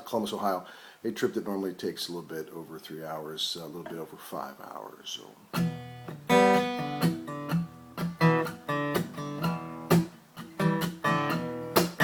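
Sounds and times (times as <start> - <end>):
acoustic guitar blues: 5.5 - 12.0.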